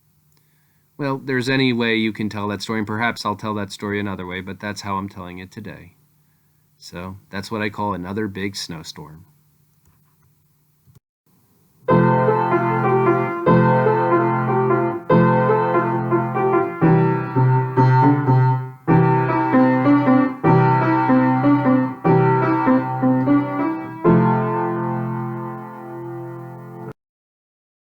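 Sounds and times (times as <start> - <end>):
piano playing sustained chords: 11.9 - 26.9.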